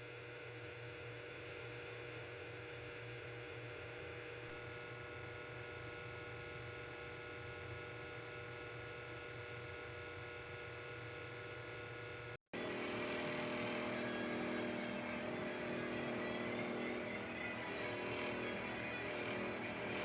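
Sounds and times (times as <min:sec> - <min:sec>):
electric fan whirring: 0:04.5 - 0:20.0
louder whir: 0:12.5 - 0:20.0.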